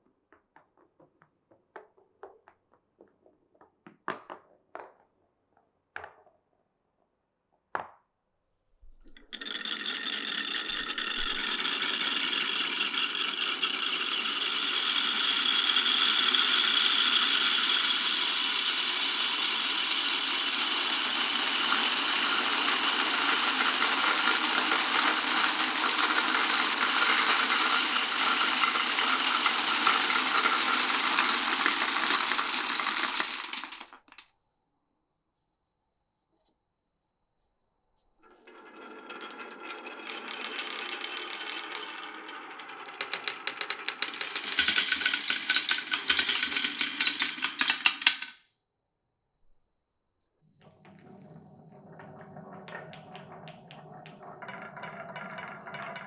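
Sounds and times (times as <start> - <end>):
marbles rattling down a marble run: 9.2 - 34.2, 38.5 - 48.4, 50.9 - 56.0
marble clicks: 15.6 - 34.2, 42.9 - 48.3.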